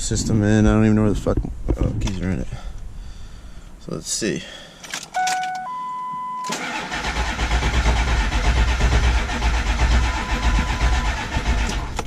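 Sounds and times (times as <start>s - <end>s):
dashboard chimes: 5.1s - 6.5s
diesel starter cranking: 6.4s - 12.0s.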